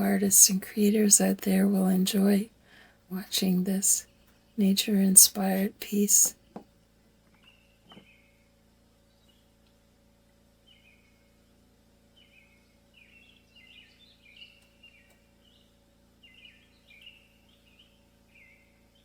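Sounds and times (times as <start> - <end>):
songbird chirping: 0.0 - 2.5, 3.1 - 6.3, 12.1 - 19.0
faint steady hum: 0.0 - 19.0.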